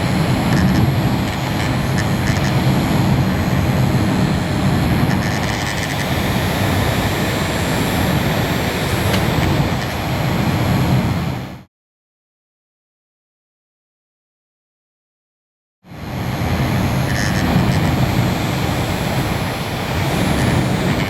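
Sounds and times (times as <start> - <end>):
small fan blowing: 0.0 - 11.7, 15.9 - 21.0.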